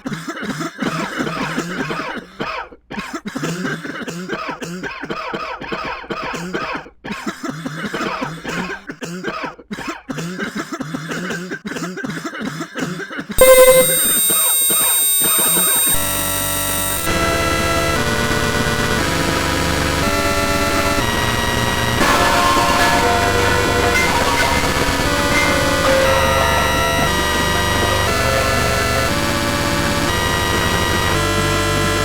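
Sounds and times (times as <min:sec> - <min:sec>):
person coughing: 0:00.0 - 0:13.4
loud steady held tones: 0:13.4 - 0:32.0.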